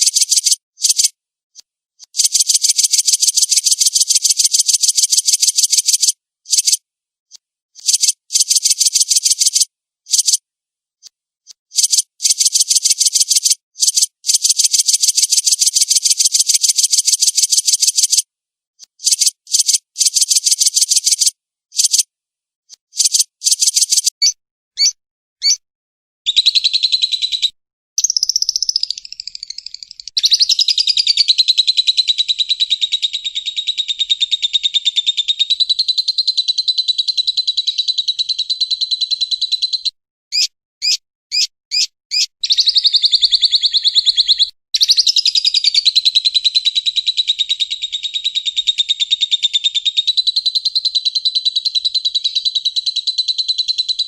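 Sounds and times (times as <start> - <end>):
short bird chirps: 0.0 - 1.1, 2.0 - 6.8, 7.8 - 10.4, 11.5 - 18.2, 18.8 - 22.0, 22.8 - 25.6, 26.3 - 31.4, 39.2 - 45.8.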